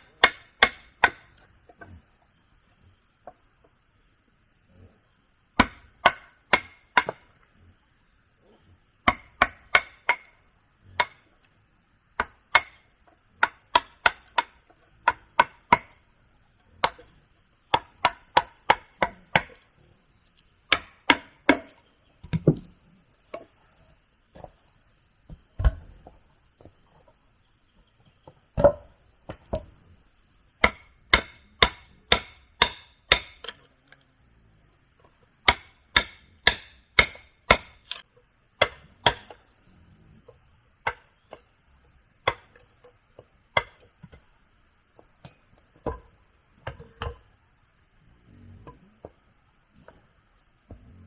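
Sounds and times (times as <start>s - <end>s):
hand tool striking wood: 0.0s - 1.9s, 5.6s - 7.2s, 9.0s - 10.4s, 13.4s - 16.0s, 16.8s - 17.1s, 17.7s - 19.7s, 20.7s - 22.7s, 30.6s - 33.6s, 35.4s - 38.0s, 38.6s - 39.4s, 42.2s - 42.6s, 43.6s - 44.2s.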